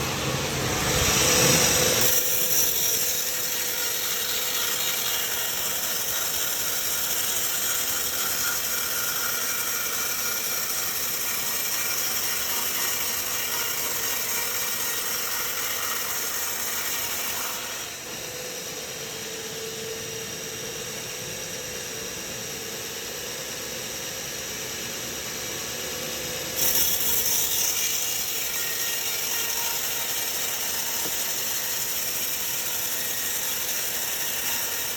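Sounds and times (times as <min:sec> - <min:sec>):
sawmill saw cutting log: 0:00.0 - 0:18.2, 0:26.5 - 0:34.9.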